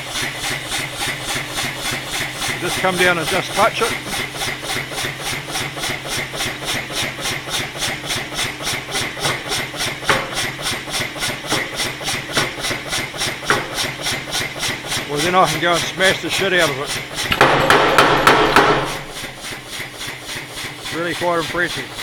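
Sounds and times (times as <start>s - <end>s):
power hammer striking: 8.8s - 19.9s.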